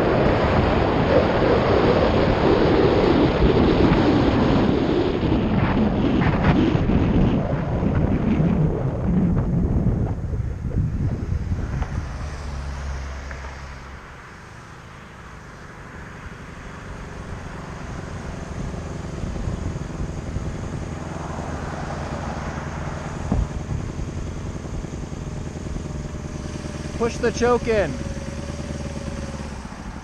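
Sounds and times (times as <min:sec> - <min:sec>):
wind buffeting microphone: 0:00.0 - 0:12.8, 0:17.3 - 0:27.0
motorcycle engine running: 0:13.4 - 0:30.0.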